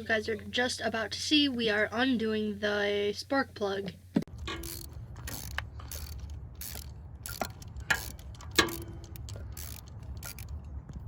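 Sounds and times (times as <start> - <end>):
ratchet wrench clicking: 4.4 - 11.0.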